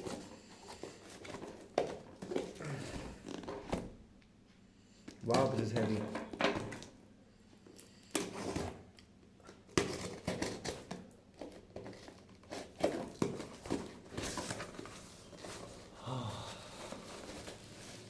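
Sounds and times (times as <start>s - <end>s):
cardboard box rustling and scraping: 11.9s - 16.0s, 16.6s - 18.0s.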